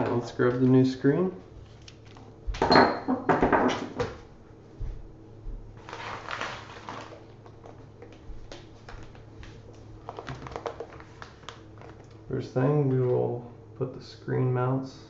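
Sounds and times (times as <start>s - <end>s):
packaging rustle: 5.8s - 9.3s, 9.9s - 12.2s.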